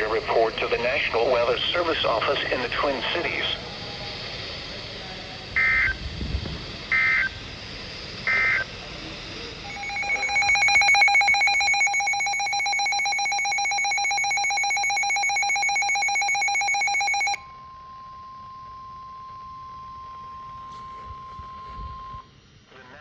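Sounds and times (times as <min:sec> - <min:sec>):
steady single-pitch alarm tone: 0:05.5 - 0:06.0, 0:06.9 - 0:07.4, 0:08.2 - 0:08.7, 0:09.6 - 0:22.4
rapidly pulsing high alarm tone: 0:05.5 - 0:22.4.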